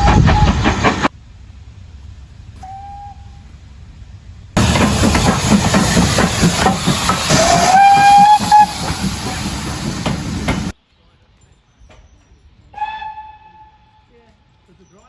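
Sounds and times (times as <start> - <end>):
steam whistle: 0.0 - 0.8, 2.6 - 3.5, 6.6 - 9.7, 12.8 - 14.1
steam locomotive chuffing: 0.0 - 10.8.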